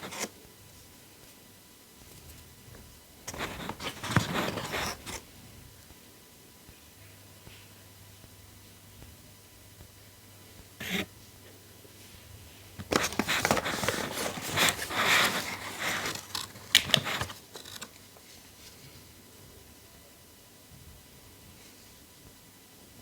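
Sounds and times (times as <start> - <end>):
packaging rustling and crinkling: 3.3 - 5.2, 12.8 - 18.8.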